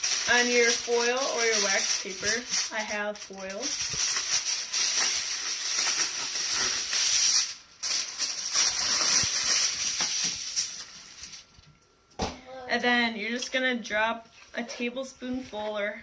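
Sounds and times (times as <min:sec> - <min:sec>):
aluminium foil crinkling: 0:00.0 - 0:11.7.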